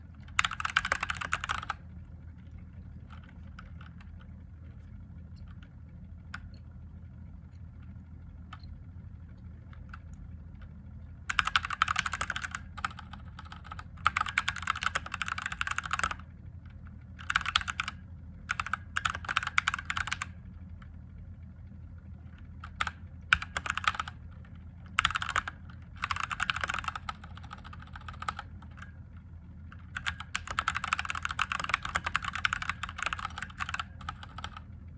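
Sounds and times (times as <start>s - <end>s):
steady low hum: 0.0s - 34.9s
typing on mechanical keyboard: 0.2s - 1.8s, 11.3s - 16.3s, 17.2s - 20.4s, 22.6s - 24.2s, 24.8s - 29.0s, 29.8s - 34.6s.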